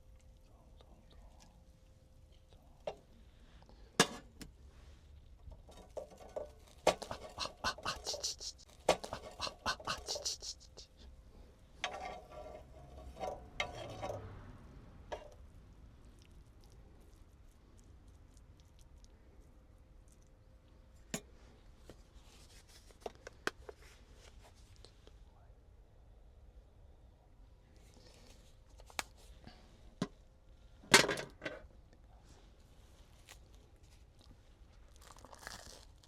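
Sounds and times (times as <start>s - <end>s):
rustling and scraping: 3.9s - 11.0s, 11.7s - 14.4s, 21.3s - 24.9s.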